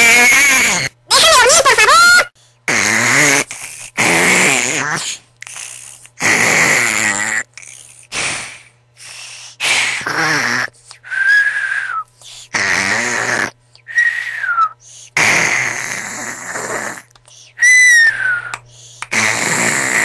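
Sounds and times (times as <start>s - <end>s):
person snoring loudly: 2.7s - 8.7s, 9.6s - 10.8s, 11.4s - 13.6s, 15.1s - 17.1s, 17.9s - 20.0s
high whistling breath: 10.9s - 12.5s, 13.8s - 15.1s, 17.3s - 19.1s.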